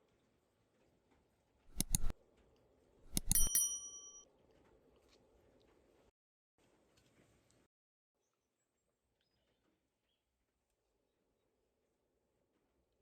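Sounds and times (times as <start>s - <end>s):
bell-like metal ring: 3.1s - 4.2s
metal objects clinking: 3.1s - 4.2s.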